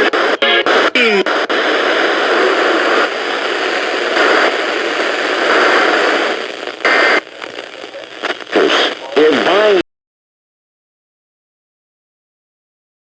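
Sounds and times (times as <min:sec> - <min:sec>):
loud static burst: 0:00.0 - 0:09.8
radio static hiss: 0:00.0 - 0:09.8.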